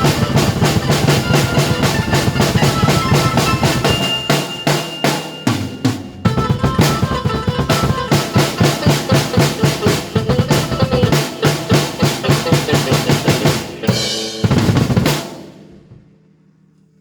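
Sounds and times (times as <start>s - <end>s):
cymbal flourish: 0.0s - 7.1s, 11.2s - 15.9s
drum kit beat: 0.0s - 16.0s
held keyboard notes: 0.0s - 16.0s.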